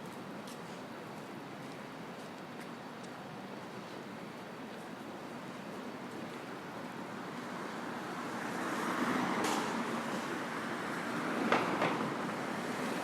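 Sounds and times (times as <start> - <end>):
passing vehicles: 5.7 - 13.0.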